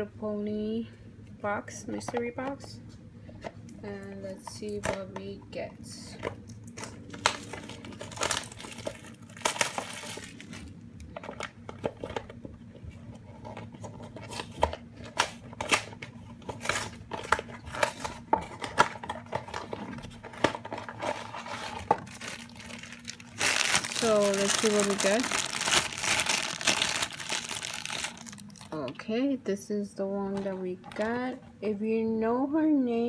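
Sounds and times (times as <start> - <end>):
packaging tearing and crinkling: 6.7 - 12.4, 13.4 - 28.7.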